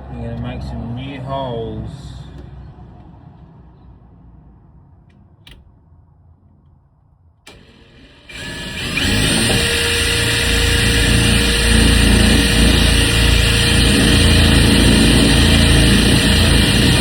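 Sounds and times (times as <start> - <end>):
cordless drill whining: 7.5 - 17.0.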